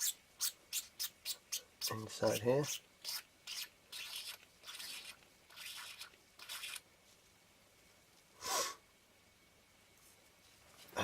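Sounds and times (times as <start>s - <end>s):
tissue rubbing on lens glass: 3.1s - 6.8s
short breathy noise: 8.4s - 8.8s.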